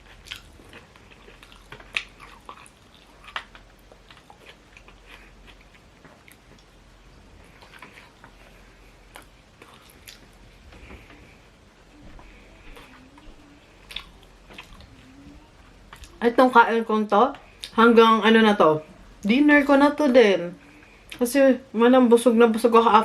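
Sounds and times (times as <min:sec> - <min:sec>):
person chewing and eating: 0:00.0 - 0:16.2.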